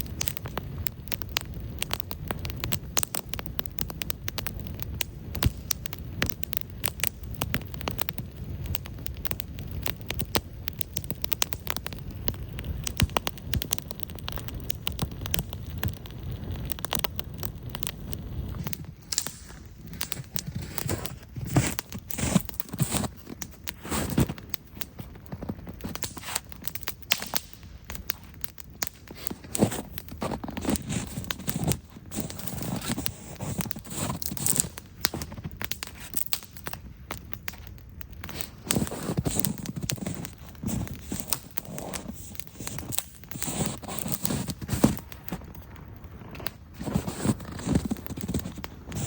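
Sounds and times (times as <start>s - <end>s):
campfire crackling and snapping: 0.0s - 49.0s
dull crunches: 12.6s - 27.4s, 28.0s - 36.2s, 37.6s - 49.0s.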